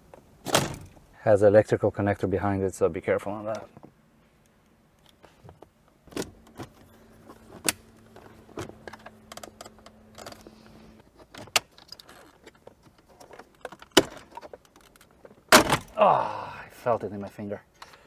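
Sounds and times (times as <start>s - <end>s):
car trim pieces clicking and rattling: 0.0s - 1.2s, 3.5s - 16.0s
low steady hum: 0.0s - 18.0s.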